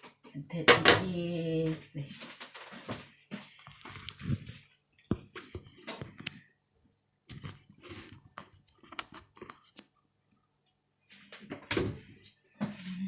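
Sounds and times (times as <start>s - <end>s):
person chewing: 3.4s - 6.5s, 7.1s - 10.8s.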